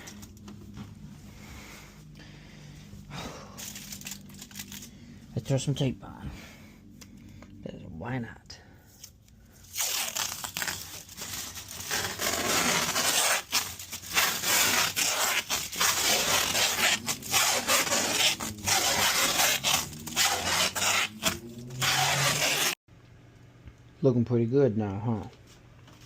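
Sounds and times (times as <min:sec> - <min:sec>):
tape ripping off roll: 0:09.7 - 0:22.8.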